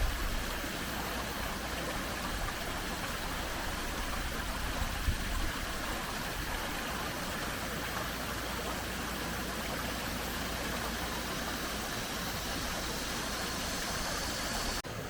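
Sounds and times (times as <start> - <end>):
stream running over rocks: 0.0 - 15.0.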